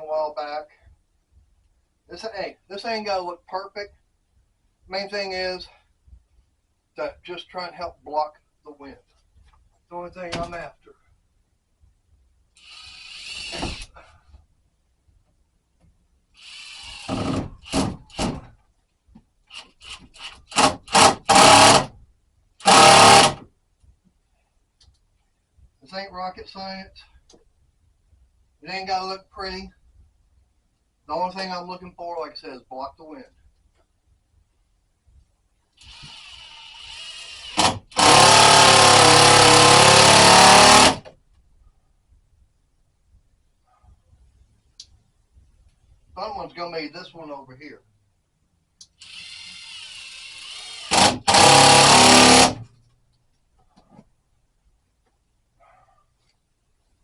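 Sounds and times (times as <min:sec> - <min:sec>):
power drill driving screws: 0:12.6 - 0:13.9, 0:16.4 - 0:18.3, 0:19.5 - 0:21.9, 0:22.6 - 0:23.4, 0:35.8 - 0:41.0, 0:49.0 - 0:52.6.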